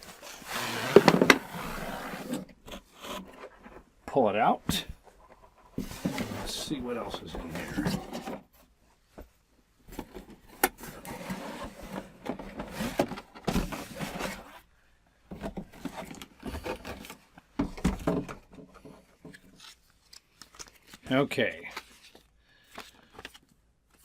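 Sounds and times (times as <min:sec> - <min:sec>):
packaging rustling and scraping: 0:00.0 - 0:03.9, 0:05.2 - 0:08.5, 0:09.9 - 0:14.7, 0:15.4 - 0:17.4.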